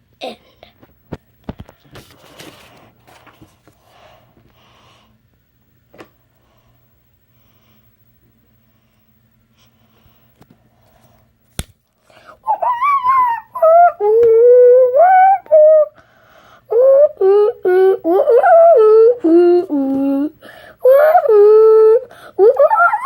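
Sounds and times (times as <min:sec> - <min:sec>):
faint hum: 0:00.0 - 0:23.0
high voice vocalizing without words: 0:12.3 - 0:16.0, 0:16.7 - 0:23.0.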